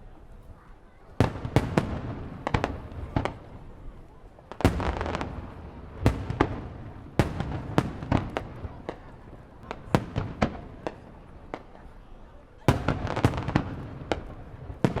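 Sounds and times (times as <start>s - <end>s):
firework crackling: 1.2s - 12.0s, 12.7s - 15.0s
firework shells booming: 4.6s - 9.0s.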